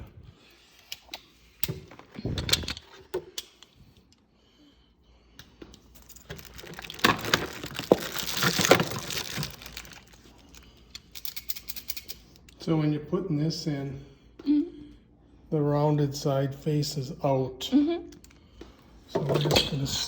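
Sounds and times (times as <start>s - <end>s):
rustling and crinkling: 5.8s - 10.9s
metal clicks and clinks: 10.9s - 12.2s.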